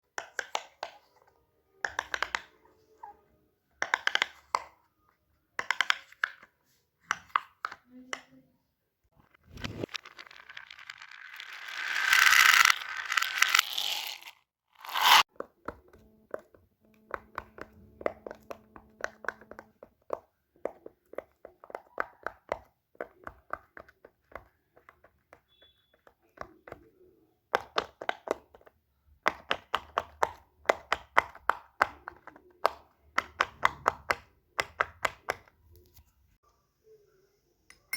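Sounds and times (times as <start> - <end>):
fidget toys clicking: 10.1 - 15.2.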